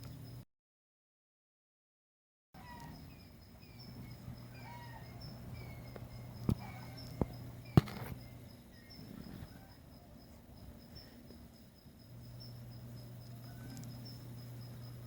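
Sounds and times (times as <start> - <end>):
bird chirping: 2.6 - 15.0
insect-like trill: 2.6 - 15.0
sharp knocks: 6.5 - 8.2.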